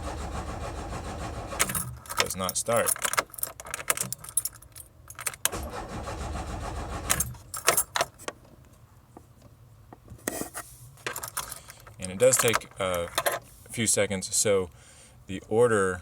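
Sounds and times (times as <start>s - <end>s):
starter motor cranking: 0.0s - 2.0s, 5.5s - 7.4s
keys jangling: 1.6s - 5.5s, 7.1s - 8.3s, 11.0s - 13.4s.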